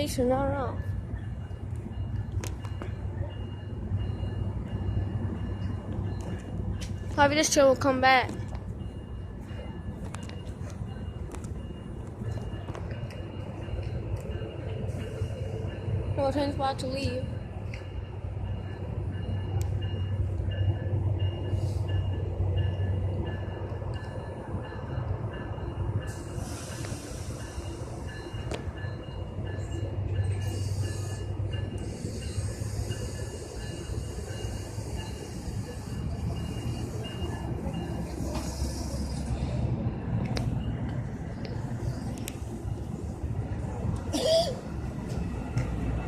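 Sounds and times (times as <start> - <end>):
locomotive bell ringing: 0.0 - 41.2
train engine rumble: 0.0 - 46.0.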